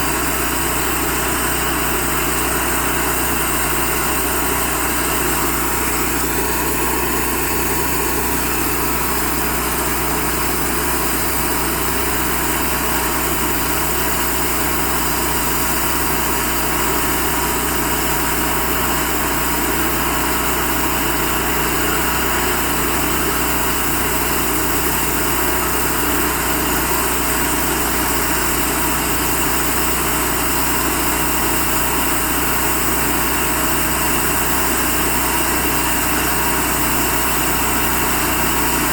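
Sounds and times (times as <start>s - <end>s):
band sawmill sawing log: 0.0s - 38.9s.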